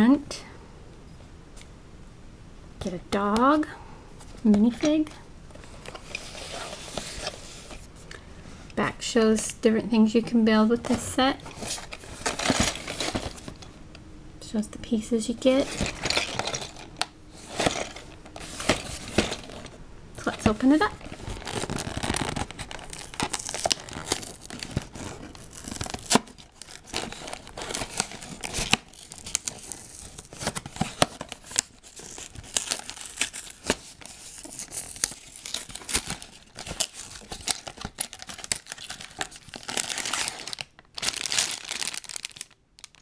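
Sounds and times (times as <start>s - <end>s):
plastic bags crinkling: 10.8s - 13.8s, 15.5s - 43.0s
cardboard ripping and crackling: 11.5s - 13.6s, 15.6s - 43.0s.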